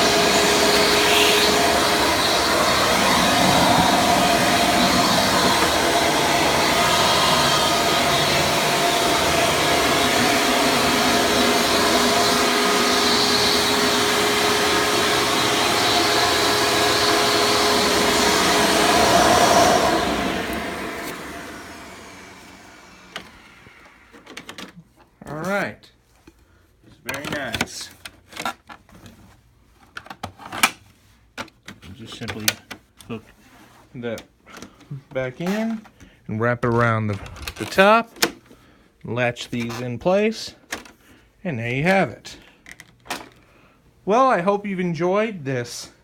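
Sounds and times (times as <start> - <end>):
vacuum cleaner motor running: 0.0 - 24.5.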